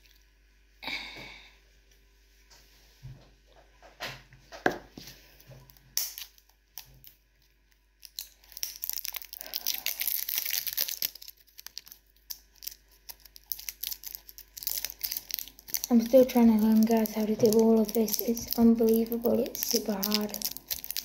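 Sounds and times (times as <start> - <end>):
packaging crinkling and tearing: 5.6 - 21.0.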